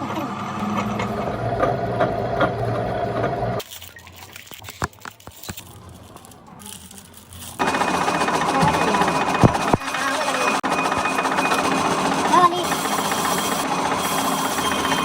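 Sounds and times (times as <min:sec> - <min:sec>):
workshop machine humming: 0:00.0 - 0:15.0.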